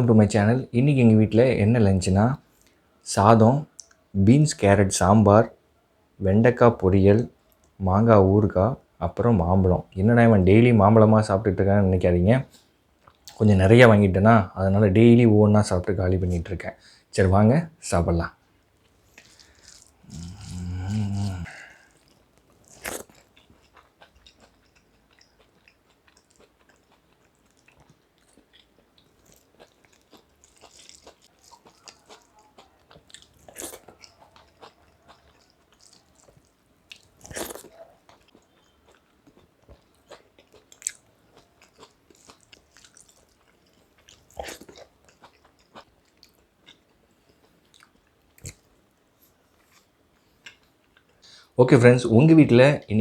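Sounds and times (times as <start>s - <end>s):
person chewing: 18.8s - 48.8s, 49.5s - 51.2s.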